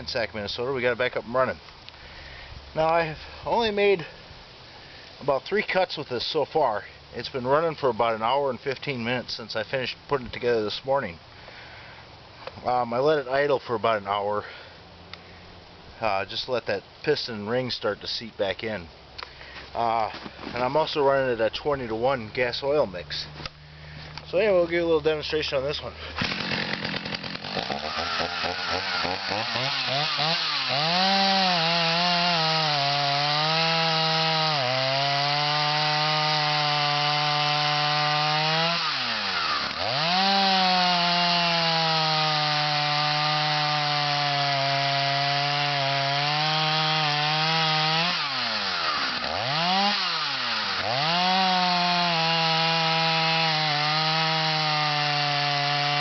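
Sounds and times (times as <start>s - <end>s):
chainsaw cutting wood: 25.6s - 56.0s.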